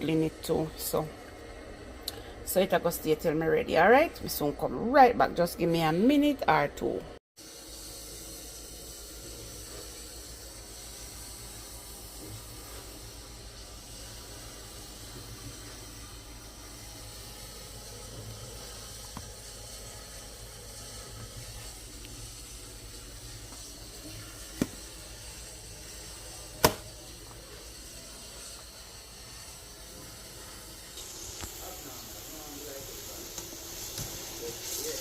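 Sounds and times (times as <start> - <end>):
pot hissing on stove: 0.0 - 6.3, 7.4 - 35.0
sharp knocks: 26.6 - 26.8.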